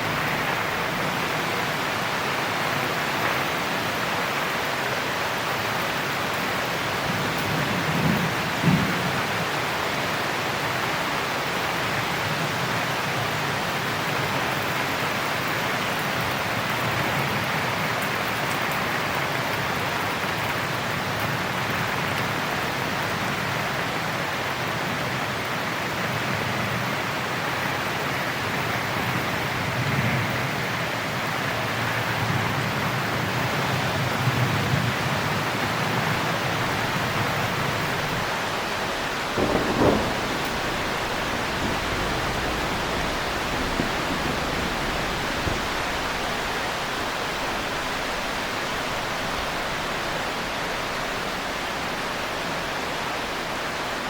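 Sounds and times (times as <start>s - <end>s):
heavy rain: 0.0s - 54.0s
low rumble of thunder: 6.7s - 9.6s, 32.1s - 52.7s.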